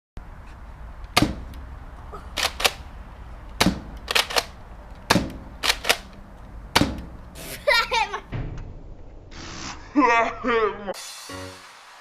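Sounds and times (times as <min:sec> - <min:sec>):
sharp cracks: 0:02.3 - 0:02.9, 0:03.5 - 0:07.2.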